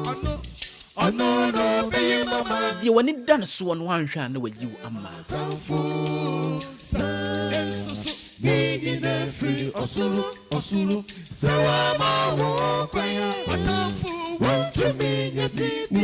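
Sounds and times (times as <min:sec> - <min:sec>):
a cappella group singing: 0:00.0 - 0:03.2, 0:04.4 - 0:16.0
singers breathing: 0:11.1 - 0:11.4.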